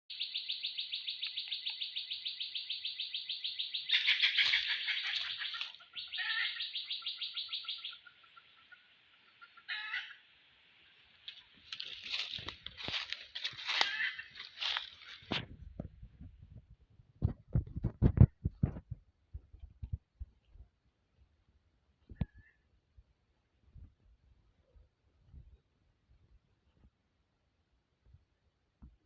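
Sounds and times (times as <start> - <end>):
rapid pulsed high chirping: 0.1 - 8.1
short lower animal calls: 0.4 - 10.3.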